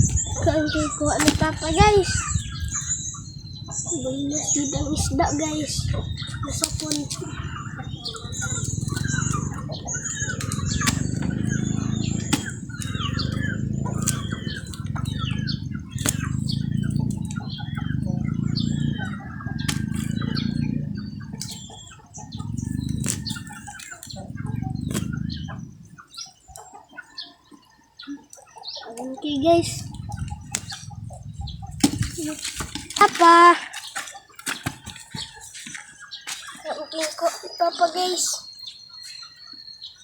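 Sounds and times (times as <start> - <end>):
small birds chirping: 0.0 - 40.0
low rushing sound: 29.6 - 32.2.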